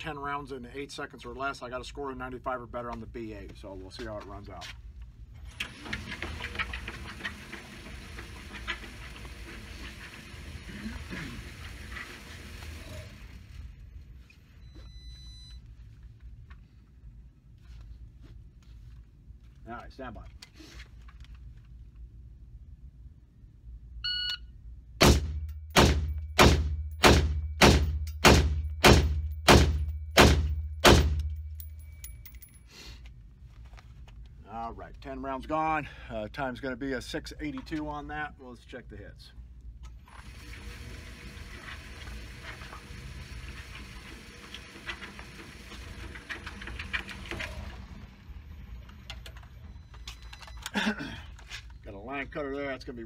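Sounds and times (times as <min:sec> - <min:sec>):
footsteps walking: 0:02.9 - 0:05.2, 0:15.6 - 0:19.7
rifle shots: 0:25.0 - 0:31.3.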